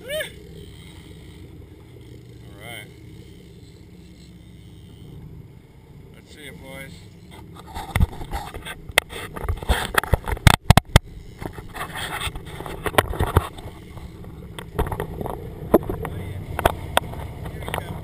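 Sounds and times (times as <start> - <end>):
wind: 0.0 - 18.0
knocks and clatter on boat deck: 7.3 - 18.0.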